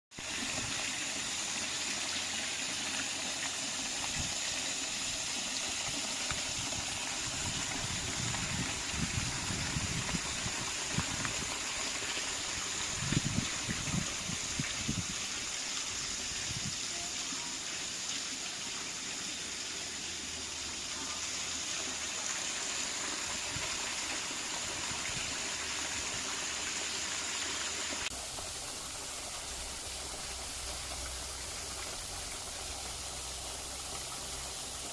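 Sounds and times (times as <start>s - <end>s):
waterfall rushing: 28.1s - 34.9s.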